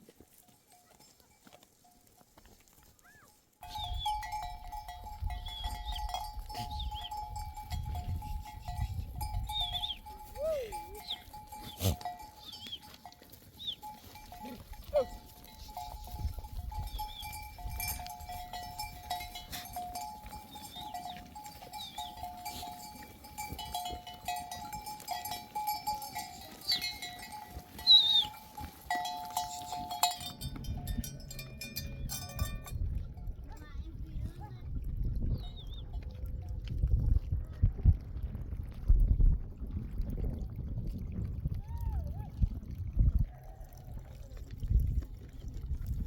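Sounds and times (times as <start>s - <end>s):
sheep bells ringing: 0.0s - 33.9s, 35.3s - 36.1s
sheep bleating: 10.3s - 12.8s.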